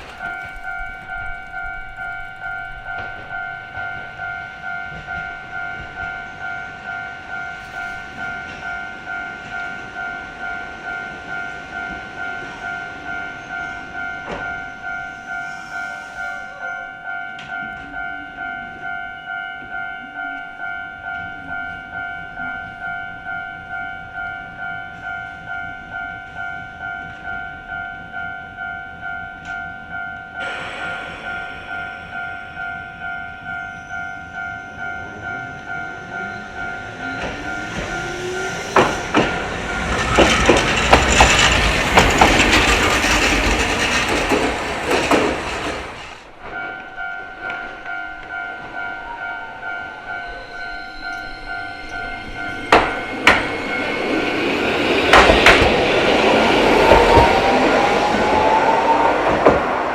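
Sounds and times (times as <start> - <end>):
wheels clacking over rail joints: 0.0 - 6.2, 36.5 - 48.0, 51.8 - 57.9
streetcar rumbling: 0.0 - 59.9.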